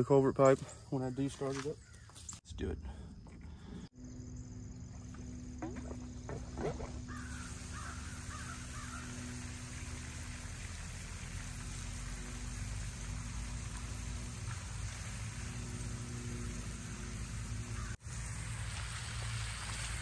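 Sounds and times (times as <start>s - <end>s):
bird calling: 0.6s - 2.4s, 4.9s - 9.5s, 16.8s - 18.0s
electric pump humming: 3.9s - 20.0s
water rushing from pipe: 5.0s - 20.0s.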